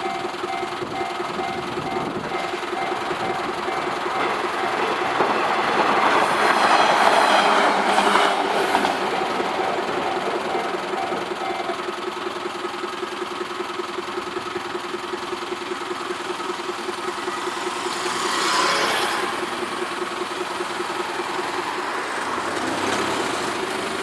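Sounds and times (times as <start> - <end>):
level crossing bell ringing: 0.0 - 12.5
rushing noise: 1.4 - 11.9.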